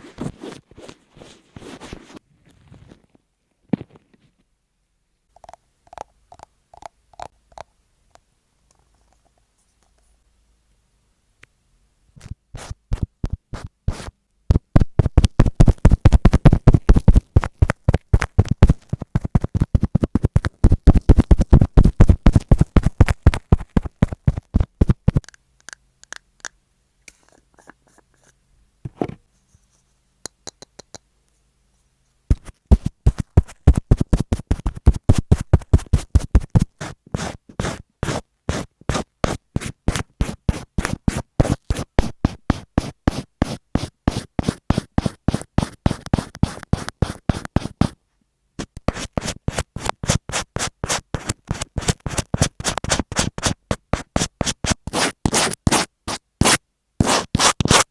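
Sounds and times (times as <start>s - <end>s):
rapid scratching strokes: 12.6s - 25.4s, 32.3s - 48.0s, 48.6s - 57.9s.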